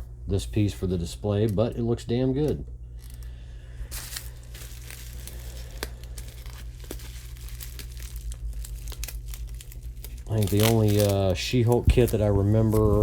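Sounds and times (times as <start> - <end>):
packing wrap crinkling: 2.3 - 13.0
wrap tearing: 3.9 - 13.0.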